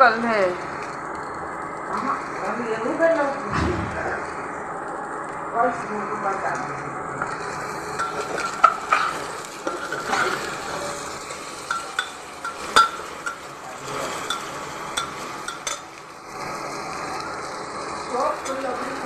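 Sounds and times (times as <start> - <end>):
food frying in a pan: 0.0 - 3.5, 4.1 - 19.0
spatula clinking on pan: 8.0 - 9.1, 11.7 - 13.5, 14.3 - 15.9.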